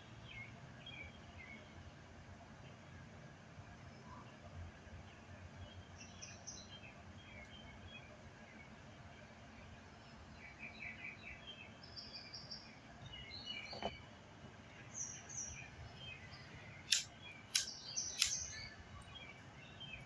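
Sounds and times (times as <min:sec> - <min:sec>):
birds chirping: 0:10.0 - 0:20.0
sharp clicks: 0:16.9 - 0:18.7.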